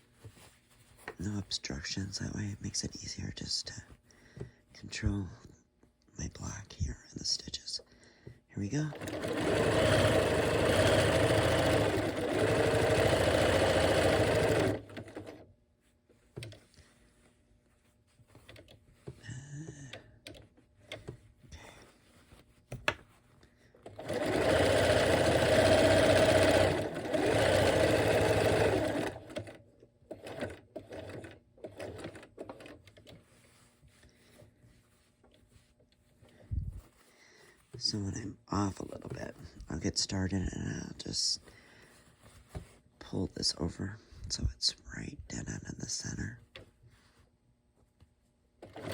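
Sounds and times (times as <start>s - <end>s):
fabric handling: 0.0s - 1.5s, 20.5s - 29.1s, 32.1s - 38.0s, 41.4s - 43.1s
sewing machine stitching: 8.8s - 15.4s, 23.8s - 33.2s, 48.6s - 48.9s.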